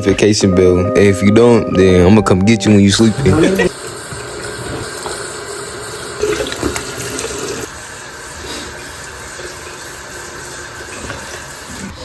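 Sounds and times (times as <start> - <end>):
tap water running into sink: 3.0 - 12.0.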